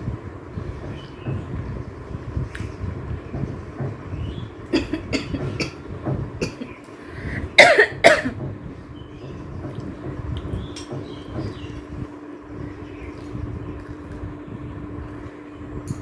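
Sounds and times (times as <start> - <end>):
woman coughing: 4.7 - 5.8, 6.4 - 6.8, 7.6 - 8.4.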